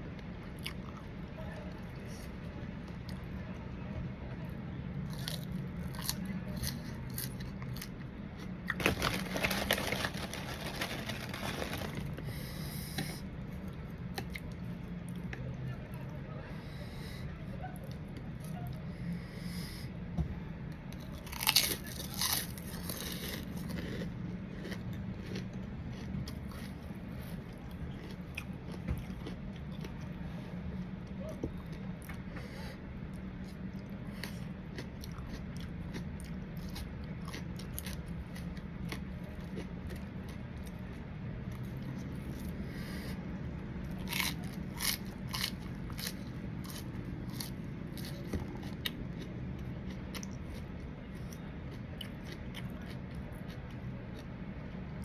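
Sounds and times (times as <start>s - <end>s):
steady low hum: 0.0s - 55.0s
person chewing and crunching: 0.6s - 1.1s, 5.0s - 15.6s, 20.9s - 32.2s, 33.0s - 54.4s.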